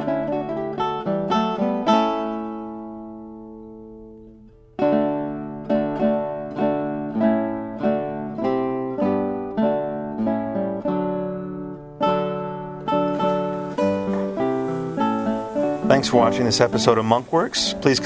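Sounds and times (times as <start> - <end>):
plucked string instrument music: 0.0 - 18.0.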